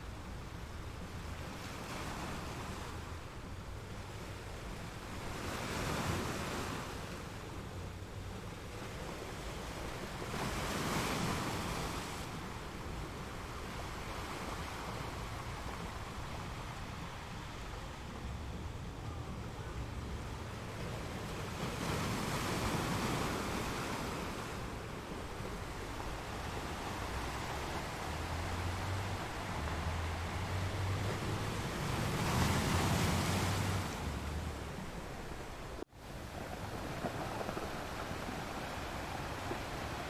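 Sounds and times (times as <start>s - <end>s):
sea waves washing onto shore: 8.5s - 40.0s.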